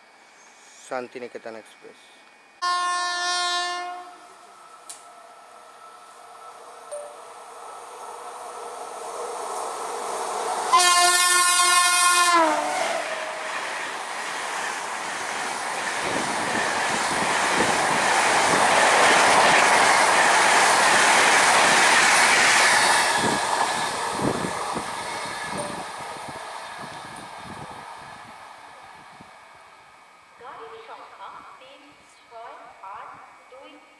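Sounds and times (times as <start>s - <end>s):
train horn: 2.6s - 4.6s, 10.7s - 13.4s
train wheels clacking over rails: 6.6s - 28.4s.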